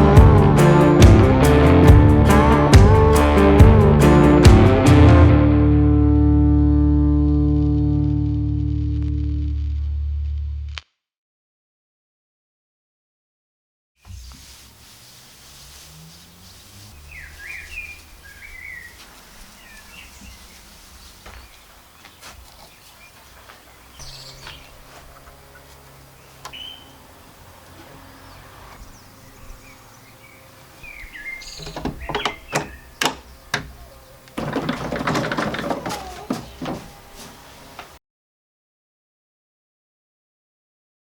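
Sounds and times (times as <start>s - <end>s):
small birds chirping: 14.1s - 38.0s
loud rustling and knocking: 31.5s - 38.0s
sharp knocks: 31.6s - 37.4s.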